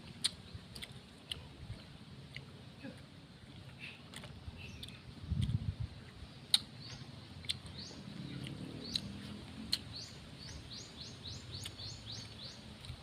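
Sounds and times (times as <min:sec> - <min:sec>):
bird chirping: 0:06.0 - 0:13.0.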